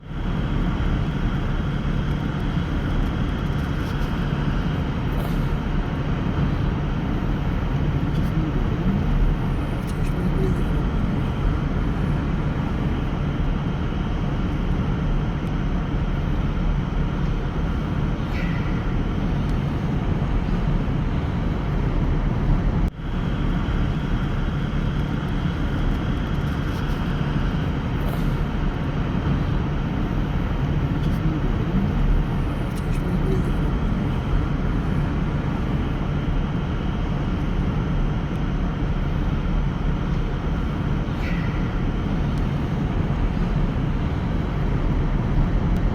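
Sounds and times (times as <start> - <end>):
vehicle engine and road noise: 0.0 - 45.9.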